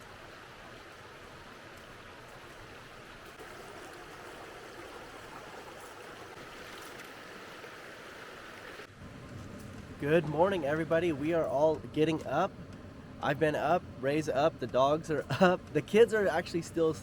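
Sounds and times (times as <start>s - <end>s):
creek water rushing: 0.0s - 9.2s.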